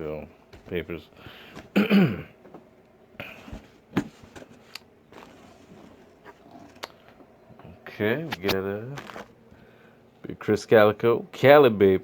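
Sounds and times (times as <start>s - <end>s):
papers and packaging rustling: 3.4s - 7.2s, 8.2s - 9.4s.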